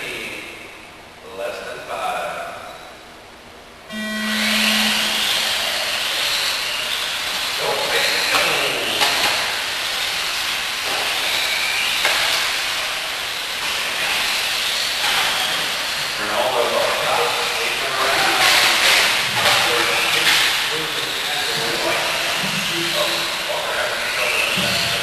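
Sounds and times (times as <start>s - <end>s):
steady hiss: 0.0s - 25.0s
steady low tone: 3.9s - 6.2s
electric motors whining: 3.9s - 25.0s.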